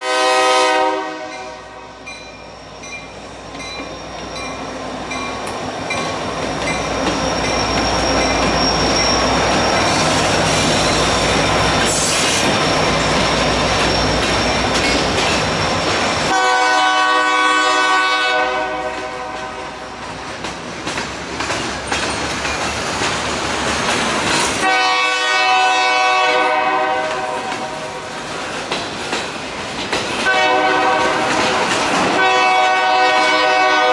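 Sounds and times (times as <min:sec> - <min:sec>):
locomotive air horn: 0:00.0 - 0:02.0, 0:16.3 - 0:19.9, 0:24.6 - 0:27.9, 0:30.2 - 0:31.5, 0:32.1 - 0:33.9
train wheels rolling: 0:00.4 - 0:33.9.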